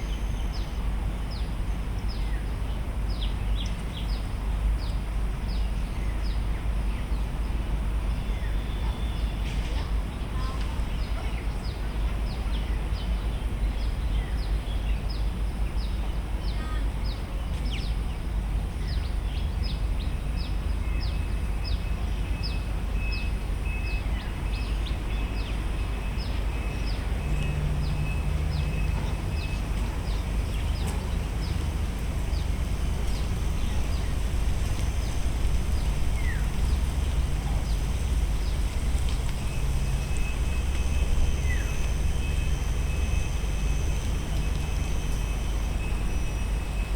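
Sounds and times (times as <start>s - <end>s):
steady low rumble: 28.8s - 46.9s.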